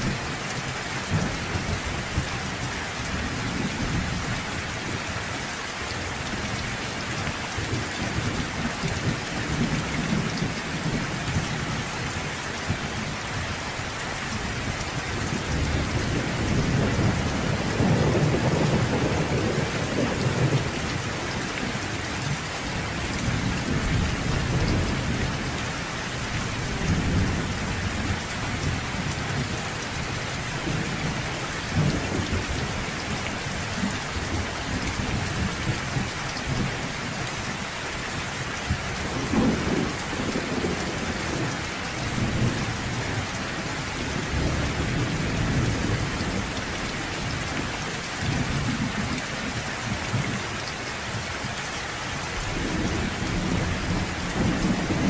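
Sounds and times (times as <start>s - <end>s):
low rolling thunder: 0.0s - 2.5s, 14.7s - 37.2s, 38.7s - 46.6s, 52.4s - 55.0s
steady rain falling: 0.0s - 55.0s.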